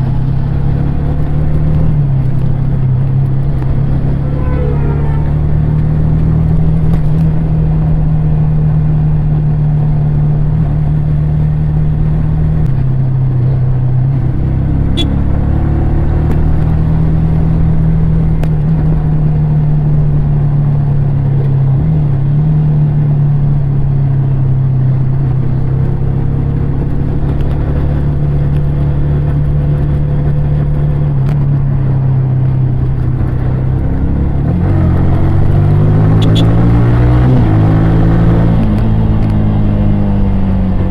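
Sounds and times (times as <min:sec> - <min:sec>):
motorcycle engine running: 0:00.0 - 0:18.4.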